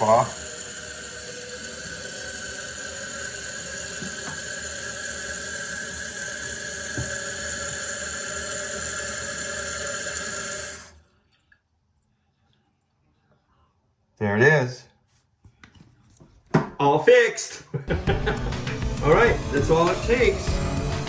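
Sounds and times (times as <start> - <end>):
toilet tank refilling: 0.0 - 11.5.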